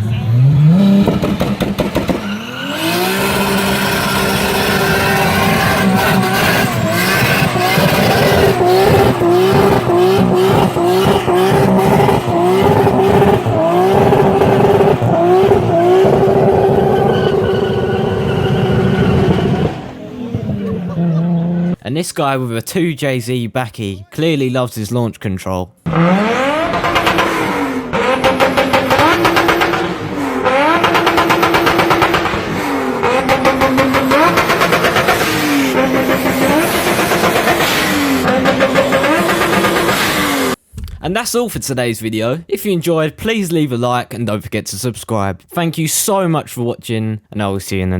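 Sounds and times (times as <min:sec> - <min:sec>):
car engine revving high: 0:00.0 - 0:21.8, 0:25.9 - 0:40.6
exhaust popping and crackling: 0:00.0 - 0:21.8, 0:25.9 - 0:41.7
tyre squeal: 0:02.1 - 0:09.8, 0:15.8 - 0:21.7.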